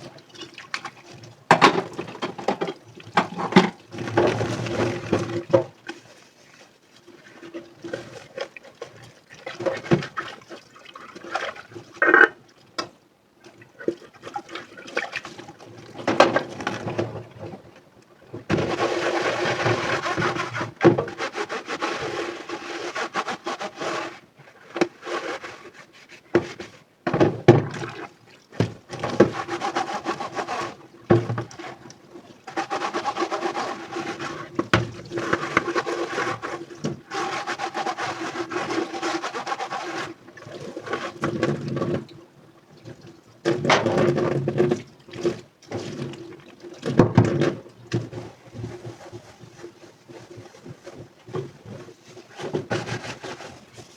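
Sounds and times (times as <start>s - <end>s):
sponge scrubbing dishes: 18.5s - 26.8s, 27.6s - 41.8s, 46.8s - 53.9s.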